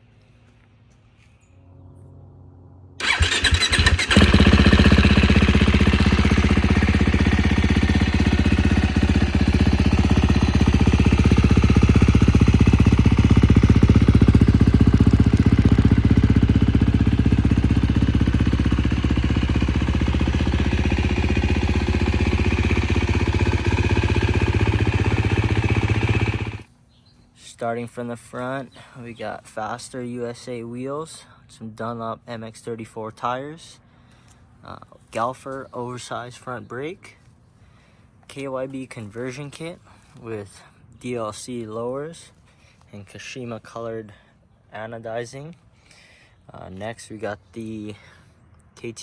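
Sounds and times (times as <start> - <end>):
motocross engine running: 3.0 - 26.7.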